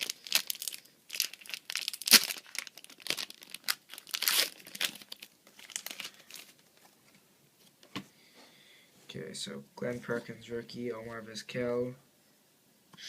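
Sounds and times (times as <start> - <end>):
wrapper torn and crinkled: 0.0 - 6.7.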